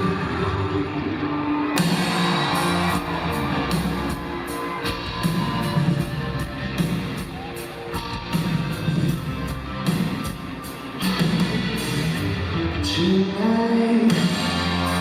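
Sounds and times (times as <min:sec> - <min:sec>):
electric guitars: 0:00.0 - 0:15.0
steady drum beat: 0:01.8 - 0:12.3.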